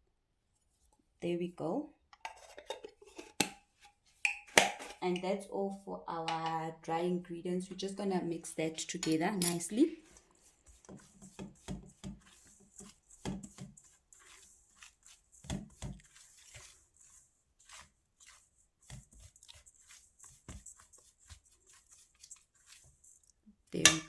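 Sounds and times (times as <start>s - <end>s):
utensil scraping mixing bowl: 8.8s - 24.0s.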